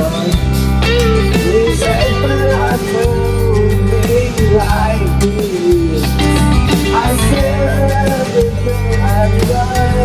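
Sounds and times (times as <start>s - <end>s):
bass: 0.0s - 10.0s
drum kit: 0.0s - 10.0s
sliding melody line: 0.8s - 9.5s.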